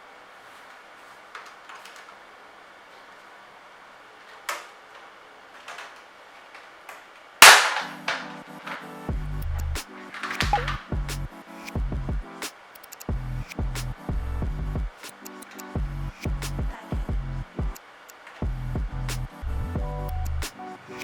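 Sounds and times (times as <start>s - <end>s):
loud sharp crack: 7.4s - 8.8s
music with steady bass: 9.0s - 12.4s, 13.1s - 15.0s, 15.8s - 17.8s, 18.4s - 21.0s
keyboard parts clicking: 10.0s - 10.9s, 12.8s - 13.1s, 15.0s - 15.8s.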